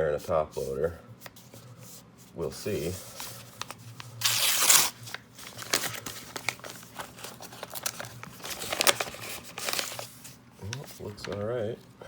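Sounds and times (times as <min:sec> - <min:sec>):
packaging crinkling: 0:03.1 - 0:12.0
package tearing open: 0:03.6 - 0:11.4.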